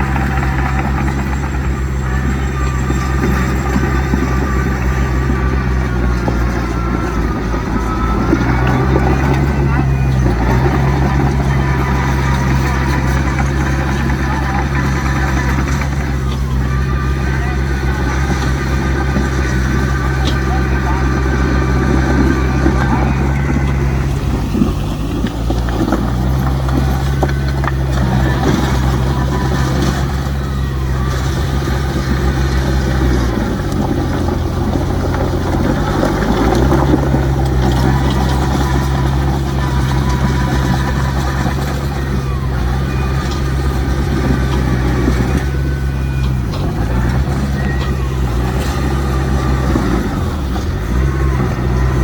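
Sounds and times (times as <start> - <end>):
heavy diesel engine under load: 0.0 - 52.0.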